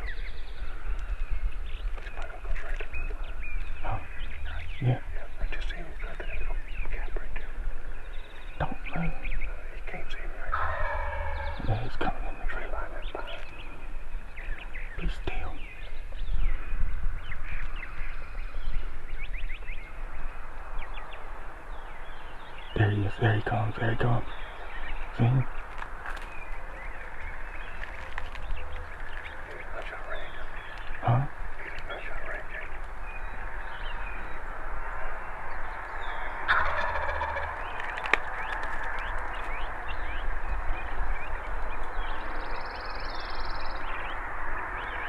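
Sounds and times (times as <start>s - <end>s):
songbirds chirping: 0.0s - 45.0s
steady low rumble: 0.0s - 45.0s
turkey gobbling: 10.5s - 12.2s, 36.2s - 39.1s.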